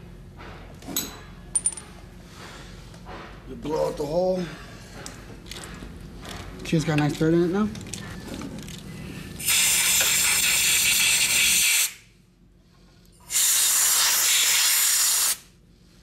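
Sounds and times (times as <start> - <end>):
air blow gun hissing: 9.4 - 12.0, 13.2 - 15.5.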